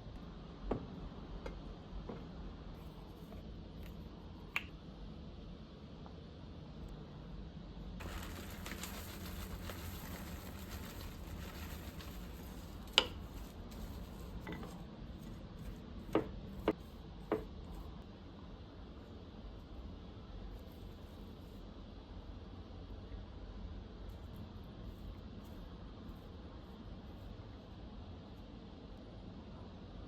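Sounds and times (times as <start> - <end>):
steady hiss: 8.0 - 14.7.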